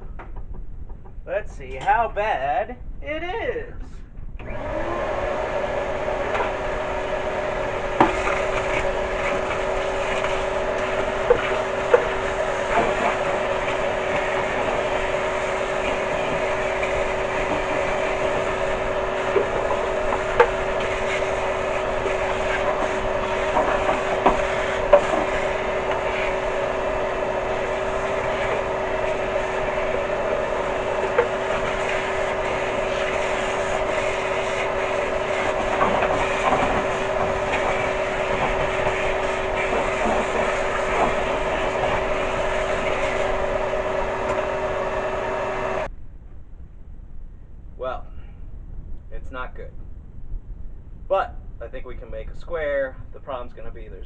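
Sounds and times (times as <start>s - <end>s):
power tool motor whining: 4.4s - 45.9s.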